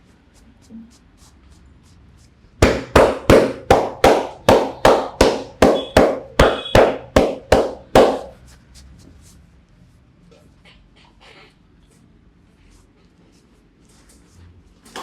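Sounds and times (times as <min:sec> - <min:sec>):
hands slapping on head: 0:02.6 - 0:08.4.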